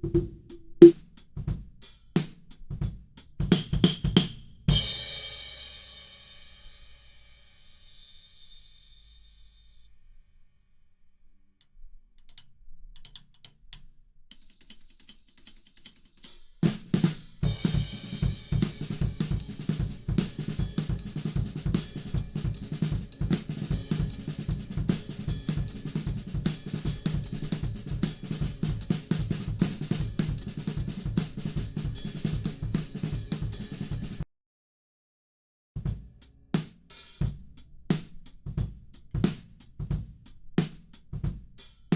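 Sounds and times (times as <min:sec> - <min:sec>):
kick drum: 0:00.0 - 0:01.6, 0:35.8 - 0:36.1
snare drum: 0:00.0 - 0:01.6, 0:03.4 - 0:04.9, 0:16.6 - 0:34.2, 0:36.6 - 0:41.9
cymbals: 0:16.1 - 0:34.2
hi-hat: 0:16.4 - 0:34.2.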